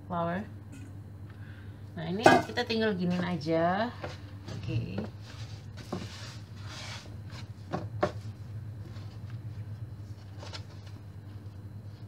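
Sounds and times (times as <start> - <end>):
steady low hum: 0.0 - 12.0
hands kneading dough: 4.0 - 12.0.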